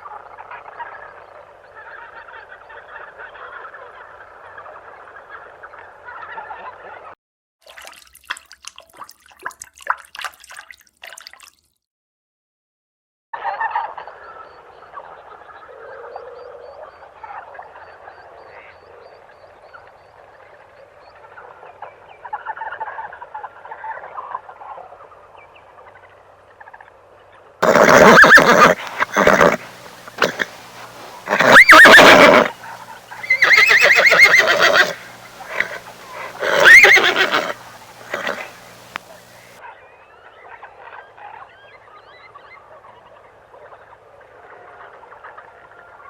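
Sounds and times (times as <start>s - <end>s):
dense chorus of animal calls: 27.6s - 39.6s.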